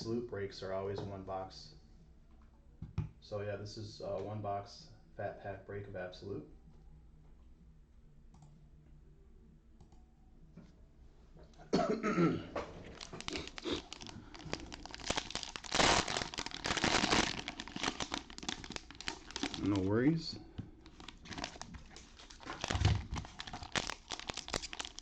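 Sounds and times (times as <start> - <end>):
person coughing: 11.6 - 12.6
plastic wrapping crinkling and tearing: 12.8 - 20.1, 20.8 - 25.0.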